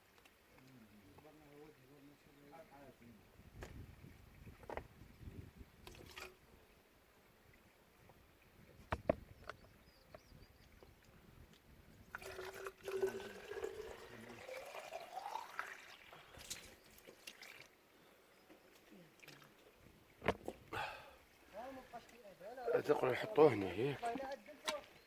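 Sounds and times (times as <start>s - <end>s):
water pouring into a container: 5.8s - 6.4s, 12.1s - 17.8s, 22.7s - 24.7s.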